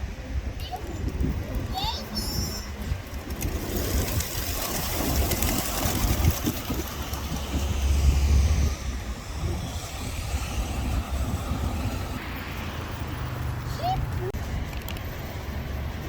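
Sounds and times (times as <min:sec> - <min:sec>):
pigeons flapping wings: 0:02.8 - 0:08.2.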